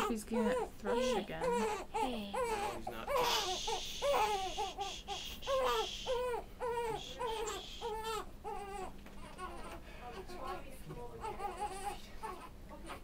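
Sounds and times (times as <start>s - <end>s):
infant crying: 0.0s - 9.8s, 11.2s - 13.0s.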